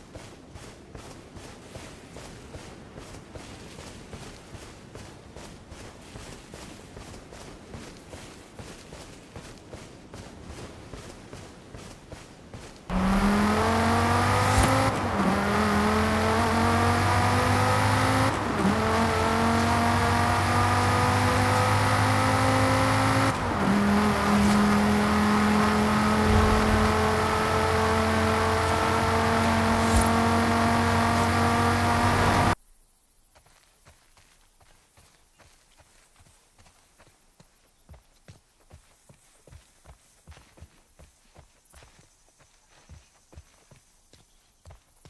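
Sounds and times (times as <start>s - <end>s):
car engine accelerating hard: 12.9s - 32.6s.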